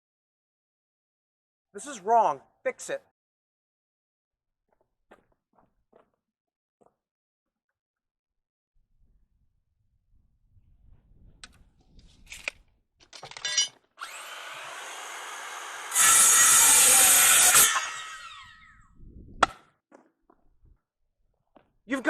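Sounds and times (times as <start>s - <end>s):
power saw cutting wood: 14.0s - 18.8s.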